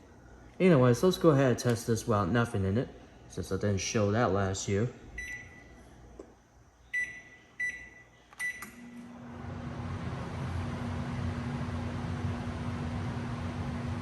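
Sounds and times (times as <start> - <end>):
microwave keypad beeps: 5.2 - 5.7, 6.9 - 8.8
microwave humming: 6.8 - 14.0.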